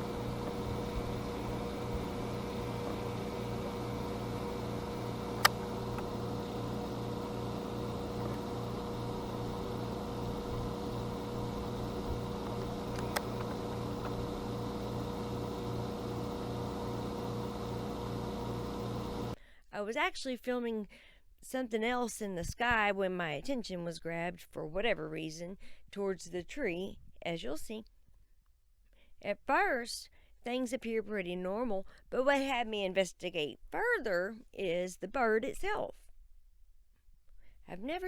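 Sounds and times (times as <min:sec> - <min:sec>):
machine hum with hiss: 0:00.0 - 0:19.4
sharp clicks: 0:05.4 - 0:06.2, 0:12.4 - 0:14.2.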